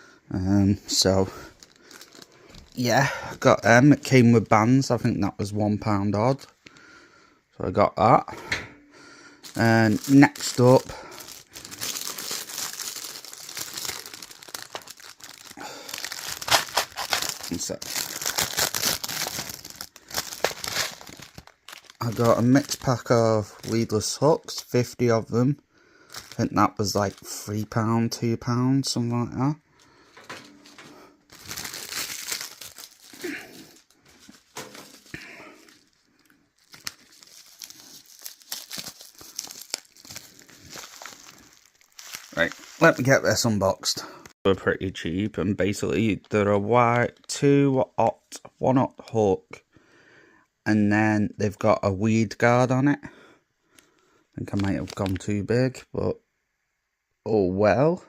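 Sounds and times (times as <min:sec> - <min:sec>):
plastic packaging crinkling: 0:01.0 - 0:04.1, 0:09.4 - 0:25.0, 0:26.1 - 0:27.7, 0:29.8 - 0:43.8, 0:54.5 - 0:55.2.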